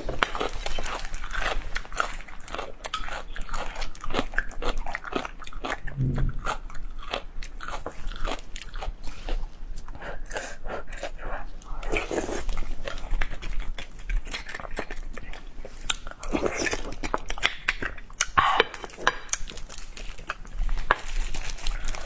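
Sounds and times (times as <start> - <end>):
crunchy food chewing: 0.0 - 22.0
brief low sound: 5.9 - 6.6.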